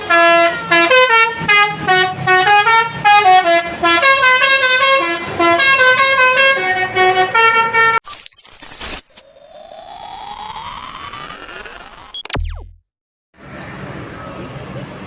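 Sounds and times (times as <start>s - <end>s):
musical bus horn melody: 0.0s - 8.0s.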